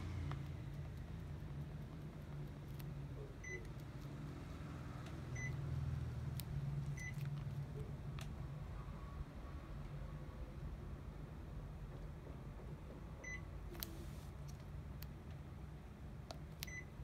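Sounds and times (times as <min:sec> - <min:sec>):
air conditioner beeps: 0:03.2 - 0:03.8, 0:05.3 - 0:05.6, 0:07.0 - 0:07.2, 0:13.2 - 0:14.2, 0:16.6 - 0:17.0.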